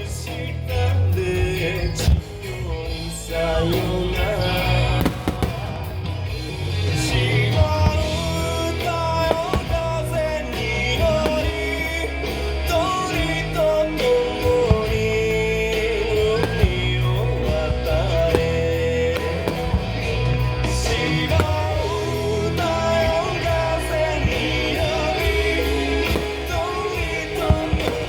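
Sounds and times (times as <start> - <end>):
rock song with singing: 0.0 - 28.0
steady bass line: 0.0 - 28.0
sharp bangs: 3.8 - 28.0.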